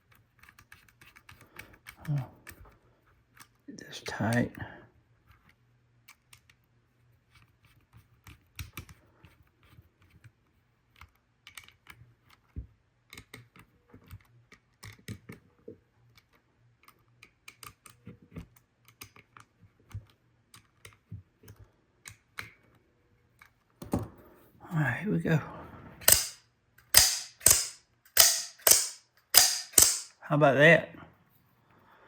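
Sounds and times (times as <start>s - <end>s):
small metal parts clicking: 26.0s - 26.4s, 27.0s - 30.2s.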